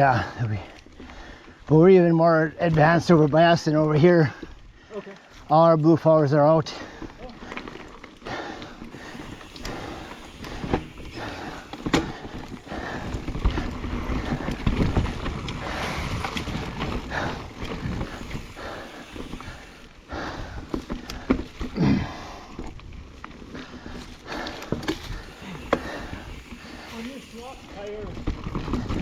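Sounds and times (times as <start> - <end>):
tyres rumbling on dirt: 6.3 - 29.0
bike knocking and rattling: 6.7 - 29.0.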